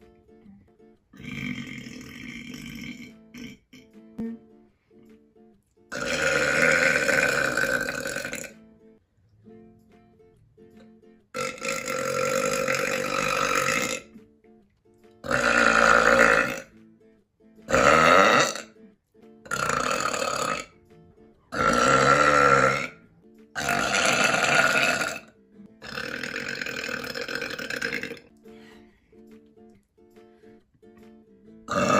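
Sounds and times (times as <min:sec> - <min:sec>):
person burping loudly: 0:01.2 - 0:03.9, 0:05.9 - 0:08.6, 0:11.4 - 0:14.1, 0:15.2 - 0:16.7, 0:17.7 - 0:18.8, 0:19.5 - 0:20.8, 0:21.5 - 0:23.0, 0:23.6 - 0:28.3, 0:31.7 - 0:31.9.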